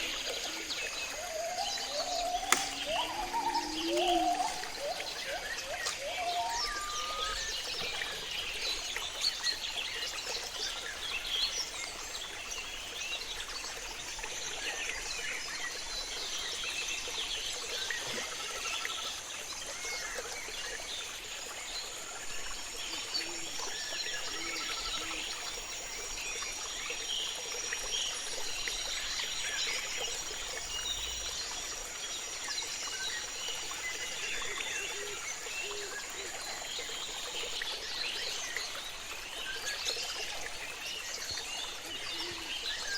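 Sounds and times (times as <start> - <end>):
river water running: 0.0 - 42.9
birds chirping and calling: 0.7 - 8.0.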